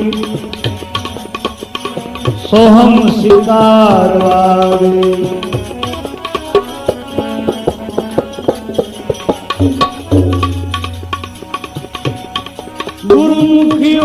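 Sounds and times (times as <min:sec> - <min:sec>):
faint held accompaniment notes: 0:00.0 - 0:14.0
hand drums playing brisk rhythm: 0:00.0 - 0:14.0
low resonant drum note: 0:09.6 - 0:11.3.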